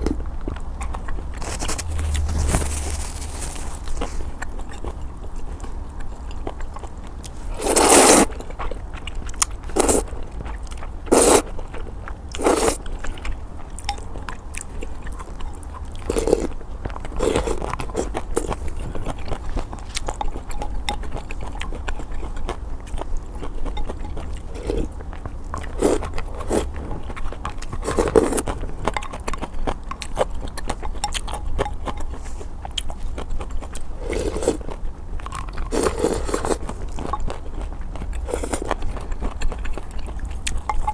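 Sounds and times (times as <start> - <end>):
chewing and crunching: 0.0 - 40.9
slurping noodles: 7.5 - 8.3, 11.1 - 11.5, 34.0 - 34.6, 35.7 - 36.7.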